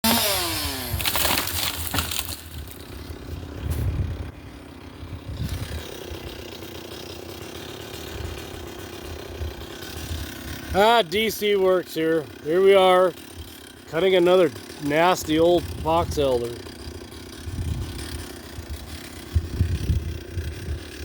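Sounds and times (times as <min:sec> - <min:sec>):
branches crashing: 0:00.0 - 0:04.2
chainsaw idling faintly: 0:00.0 - 0:21.0
wood cracking: 0:00.1 - 0:21.0.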